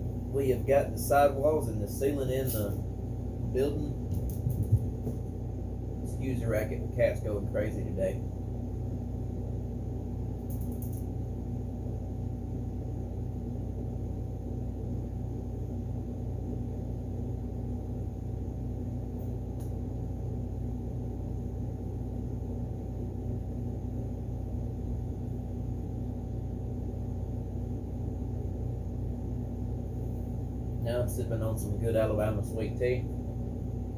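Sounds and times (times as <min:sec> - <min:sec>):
machine hum: 0:00.0 - 0:33.9.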